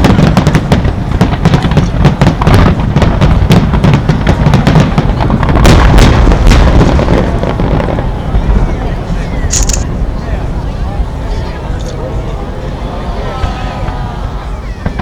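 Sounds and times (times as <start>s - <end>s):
fireworks low booming: 0.0s - 11.2s, 13.4s - 15.0s
fireworks crackling: 0.0s - 12.5s, 13.5s - 15.0s
sharp loud cracks: 9.5s - 9.9s.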